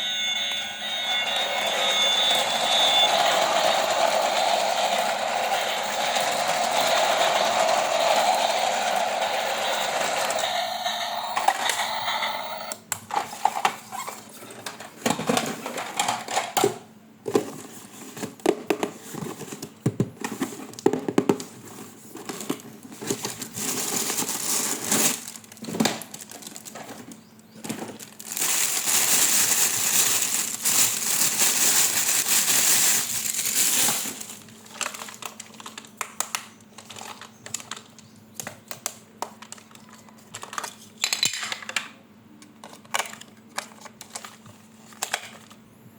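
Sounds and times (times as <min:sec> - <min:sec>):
loud continuous rustling: 0:21.6 - 0:35.1
plastic packaging crinkling: 0:22.3 - 0:38.0.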